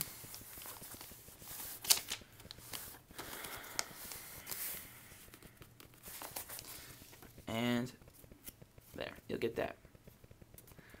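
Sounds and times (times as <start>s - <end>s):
paper being folded and creased: 0.0s - 7.4s.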